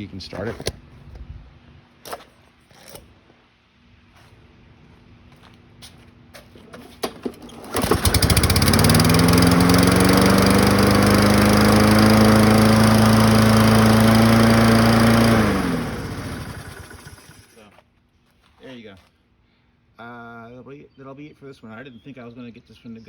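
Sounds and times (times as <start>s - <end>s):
pull starter clicks and knocks: 7.0s - 17.4s
lawn mower engine running: 7.2s - 17.6s.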